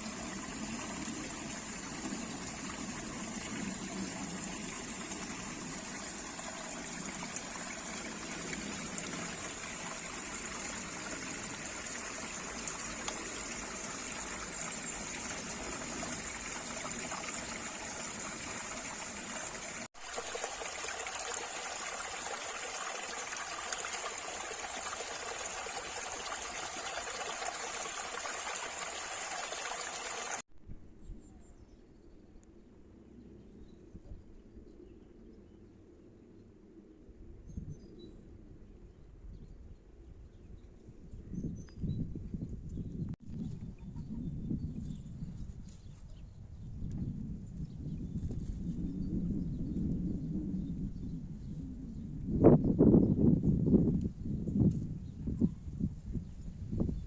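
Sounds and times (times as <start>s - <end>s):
stream water trickling: 0.0s - 30.4s
quiet outdoor background: 0.0s - 57.0s.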